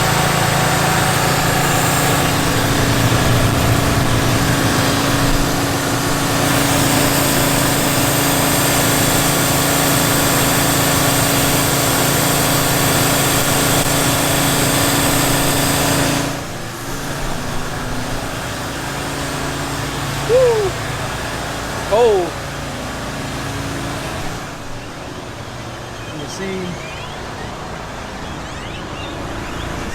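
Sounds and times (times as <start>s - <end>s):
water jet spraying on concrete: 0.0s - 22.2s
pressure washer engine running: 0.0s - 26.6s.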